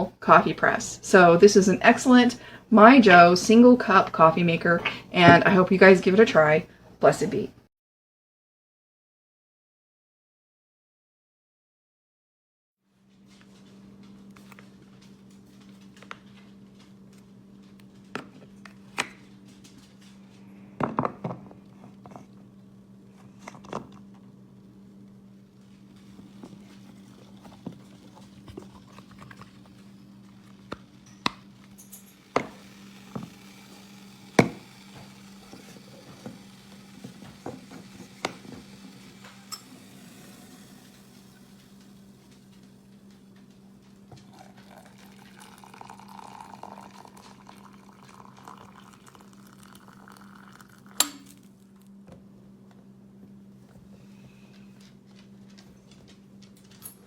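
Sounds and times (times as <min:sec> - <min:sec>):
steady low hum: 0:13.0 - 0:57.0.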